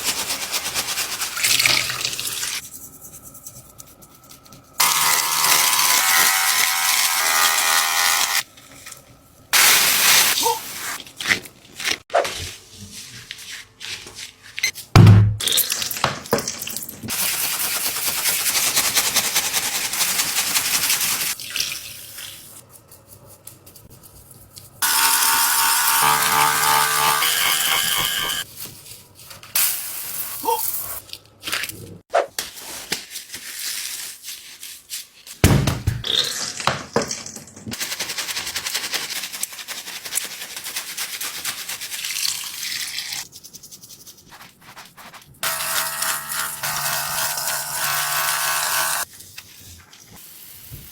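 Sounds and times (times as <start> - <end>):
steady electric buzz: 24.8 - 28.4, 45.4 - 49.0
tap water running: 24.8 - 28.4.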